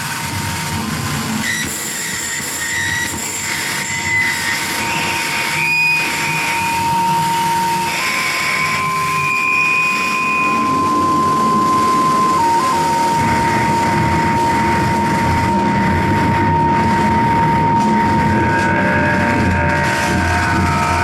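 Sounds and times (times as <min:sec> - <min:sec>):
harsh electronic noise music: 0:06.0 - 0:21.0
steady high tone: 0:06.5 - 0:21.0.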